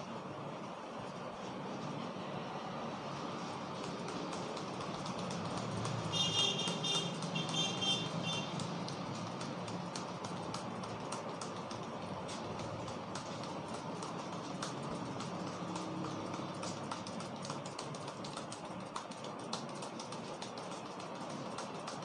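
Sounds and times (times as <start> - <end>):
quick taps and pats: 3.0 - 22.0.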